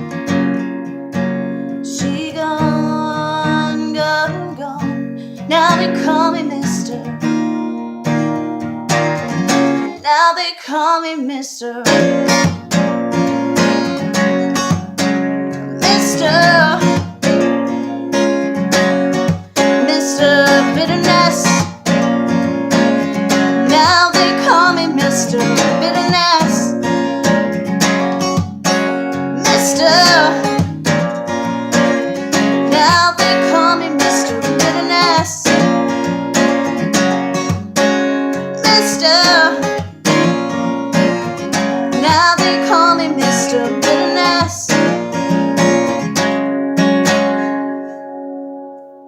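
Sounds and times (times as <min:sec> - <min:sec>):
strummed acoustic guitar: 0:00.0 - 0:10.8, 0:11.8 - 0:49.0
person singing without words: 0:01.7 - 0:07.3, 0:09.9 - 0:12.2, 0:15.5 - 0:17.2, 0:19.6 - 0:21.8, 0:23.3 - 0:27.1, 0:29.2 - 0:30.9, 0:32.3 - 0:35.9, 0:38.4 - 0:40.2, 0:41.7 - 0:45.2.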